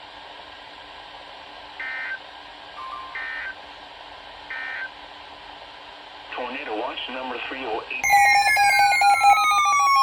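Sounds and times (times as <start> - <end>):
radio hiss: 1.5 - 2.4, 3.2 - 8.0
digital data tone bursts: 2.8 - 3.6, 8.0 - 10.0.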